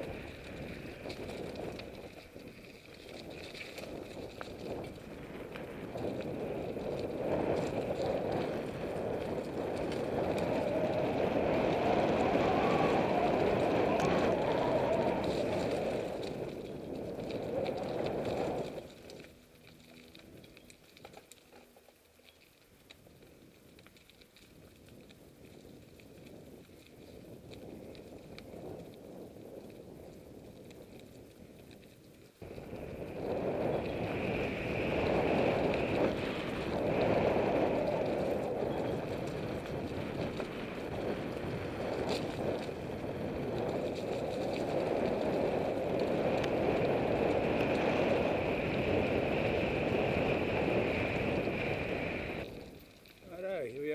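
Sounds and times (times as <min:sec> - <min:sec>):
wind on microphone: 0:00.0 - 0:20.8, 0:23.0 - 0:53.9
bike tyres rolling on gravel: 0:00.0 - 0:53.9.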